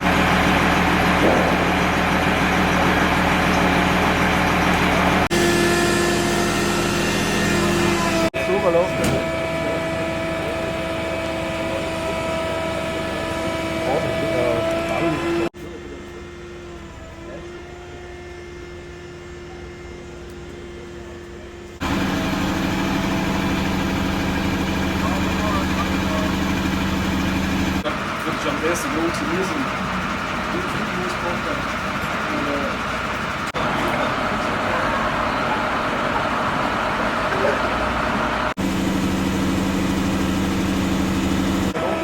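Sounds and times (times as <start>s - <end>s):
engine idling: 0.0s - 18.3s, 19.1s - 42.0s
mechanical hum: 0.0s - 27.8s.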